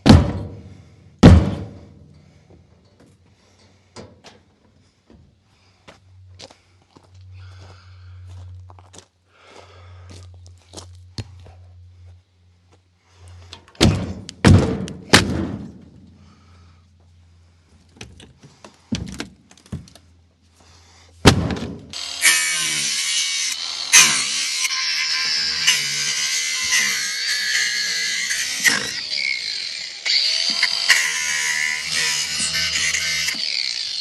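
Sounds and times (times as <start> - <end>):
heavy wooden thuds: 0.0 - 1.9, 13.8 - 16.0, 21.2 - 21.9
hand-held power tool running: 21.9 - 34.0.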